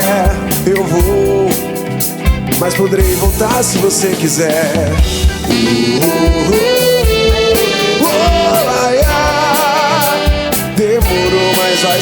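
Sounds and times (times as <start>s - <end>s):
bass: 0.0s - 12.0s
horn section with vibrato: 4.9s - 12.0s.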